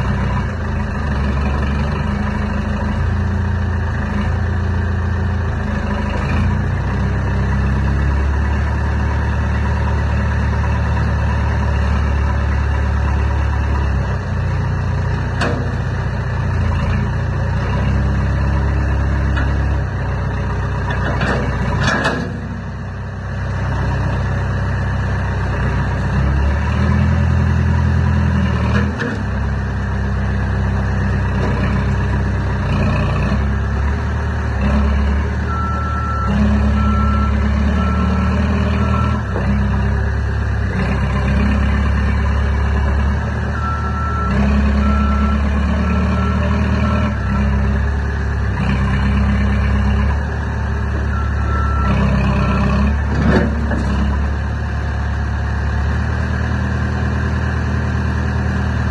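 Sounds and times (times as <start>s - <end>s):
diesel engine of heavy machine: 0.0s - 58.9s
reversing alarm beeping: 34.7s - 39.4s, 43.5s - 47.6s, 51.0s - 52.9s.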